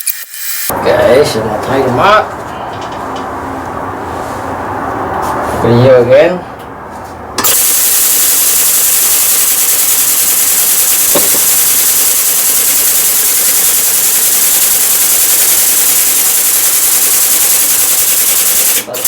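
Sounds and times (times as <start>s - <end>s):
pneumatic impact wrench running: 0.0s - 0.7s, 7.4s - 19.0s.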